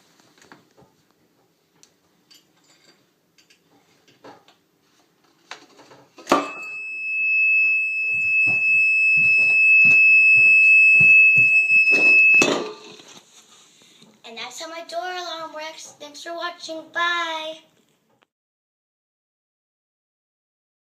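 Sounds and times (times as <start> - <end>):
high-pitched buzzer tone: 6.3 - 12.7.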